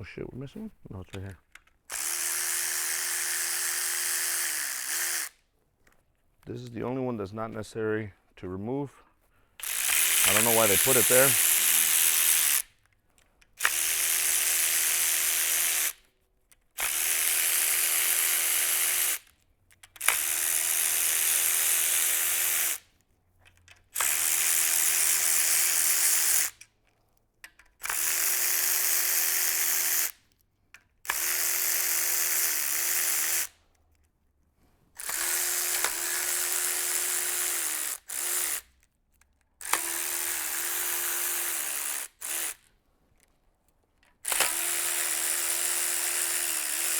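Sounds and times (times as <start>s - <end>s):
cordless power tool whining: 1.8s - 5.4s, 9.6s - 16.1s, 16.8s - 19.3s, 19.9s - 22.9s, 23.8s - 26.6s, 27.8s - 30.2s, 31.0s - 33.6s, 35.0s - 38.8s, 39.6s - 42.8s, 44.1s - 46.9s.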